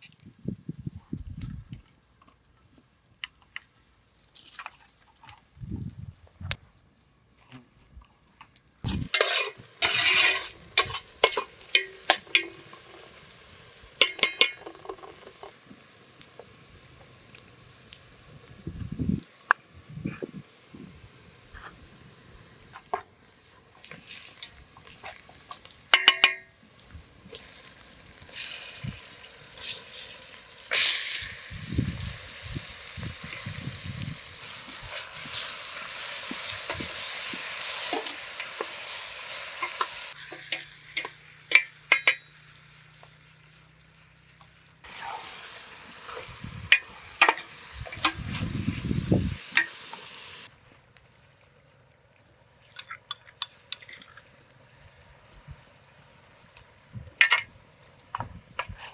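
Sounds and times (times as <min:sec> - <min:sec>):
food sizzling in hot oil: 0:08.8 - 0:50.5
utensil scraping a pot: 0:08.9 - 0:13.2.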